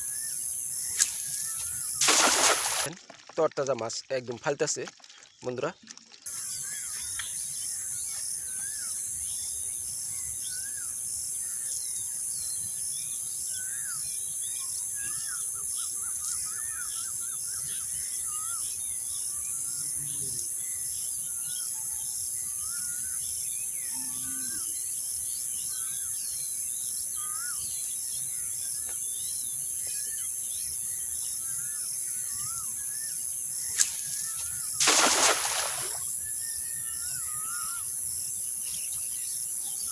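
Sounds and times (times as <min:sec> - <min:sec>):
birds chirping: 0:33.7 - 0:36.0.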